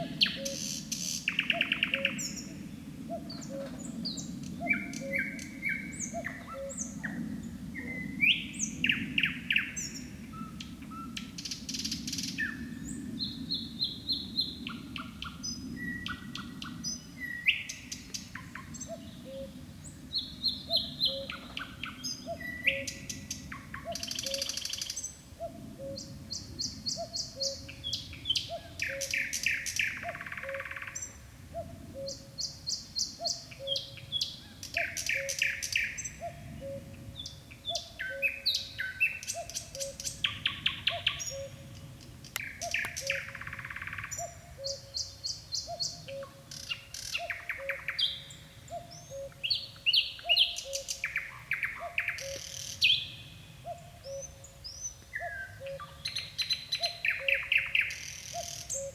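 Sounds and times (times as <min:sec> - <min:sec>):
nightingale singing: 0:00.0 - 0:02.5, 0:20.1 - 0:41.6, 0:42.2 - 0:58.9.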